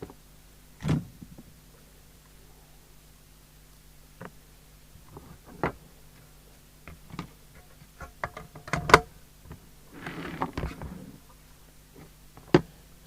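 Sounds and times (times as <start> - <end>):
scraping rustle: 9.9 - 11.2.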